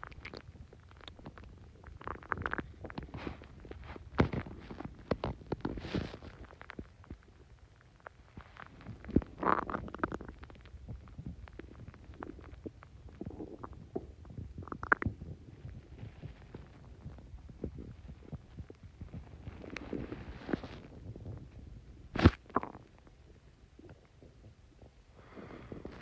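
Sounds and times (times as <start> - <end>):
stomach gurgling and rumbling: 0.0 - 26.0
bubbling pops: 13.2 - 15.3.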